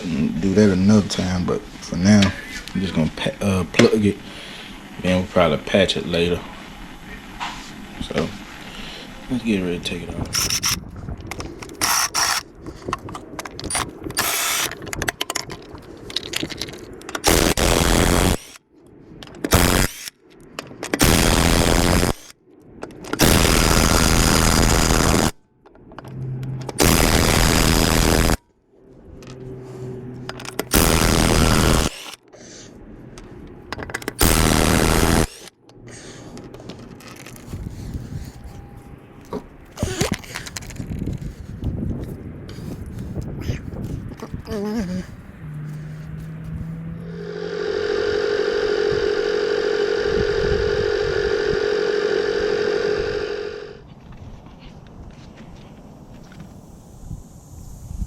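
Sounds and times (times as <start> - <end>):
impact wrench bursts: 10.3 - 12.5, 13.6 - 14.8, 17.2 - 18.6, 19.5 - 20.2, 20.9 - 22.3, 23.1 - 25.4, 26.7 - 28.4, 30.3 - 32.2, 33.8 - 35.5
handling noises: 10.3 - 17.4, 35.3 - 44.4.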